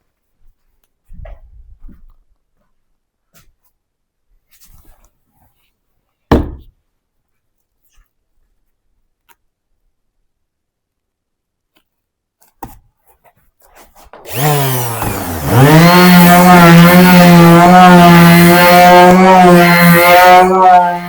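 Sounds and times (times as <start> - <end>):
electric sander motor on wood: 14.3 - 21.0.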